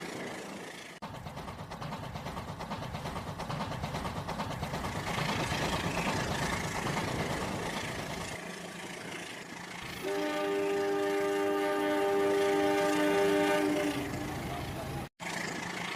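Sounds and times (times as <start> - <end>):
train running: 0.0 - 15.9
train horn chord: 10.0 - 14.4.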